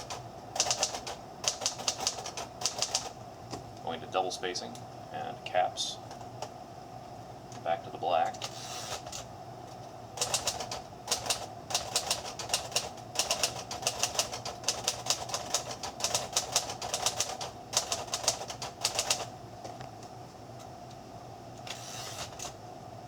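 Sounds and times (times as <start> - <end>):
typewriter key strikes: 0.6 - 3.1.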